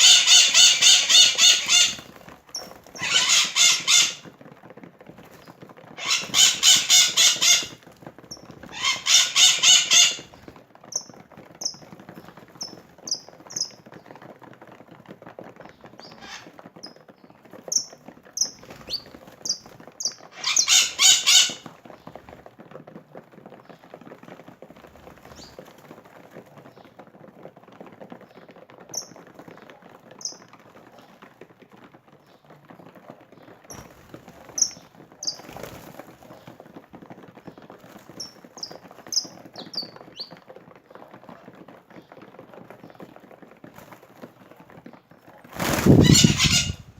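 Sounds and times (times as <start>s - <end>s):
rapidly pulsing bird calls: 0.0s - 4.3s, 5.3s - 13.9s, 15.7s - 17.0s, 17.6s - 22.2s, 30.2s - 31.1s, 33.4s - 36.7s, 37.4s - 40.4s, 45.2s - 46.9s.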